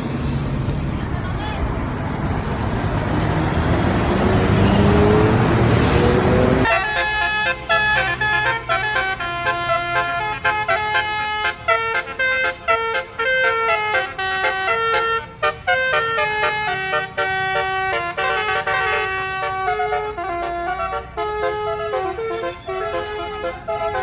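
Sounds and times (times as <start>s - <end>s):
multi-trumpet air horn melody: 6.0s - 24.0s.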